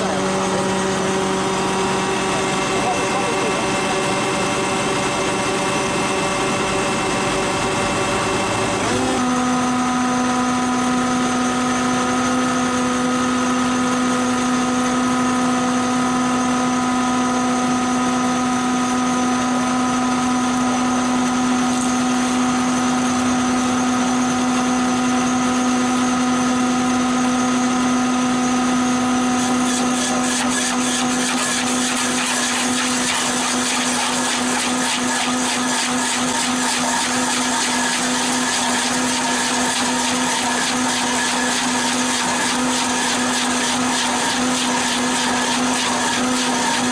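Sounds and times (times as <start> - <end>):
stump grinder engine running: 0.0 - 46.9.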